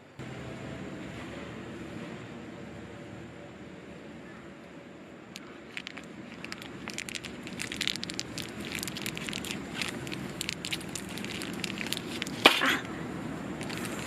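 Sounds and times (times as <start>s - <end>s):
campfire crackling and popping: 5.4s - 12.8s.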